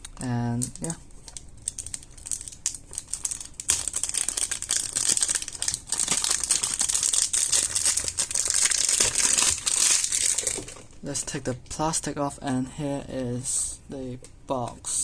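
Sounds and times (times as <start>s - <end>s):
plastic wrap crinkling: 0.2s - 11.0s.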